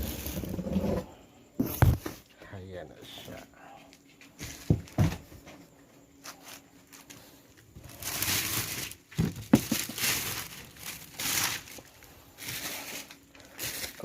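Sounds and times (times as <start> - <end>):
plastic sheeting rustling: 7.8 - 14.0.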